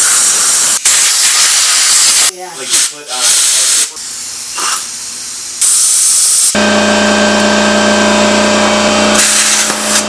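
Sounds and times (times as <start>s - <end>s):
compressed air hissing: 0.0s - 6.6s, 9.1s - 10.0s
air compressor motor humming: 4.0s - 10.0s.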